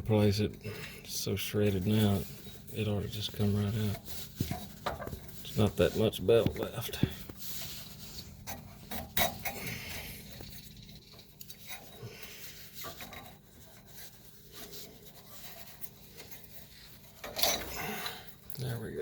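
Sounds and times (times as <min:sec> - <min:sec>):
rubber belt rubbing and scraping: 0:00.2 - 0:18.4.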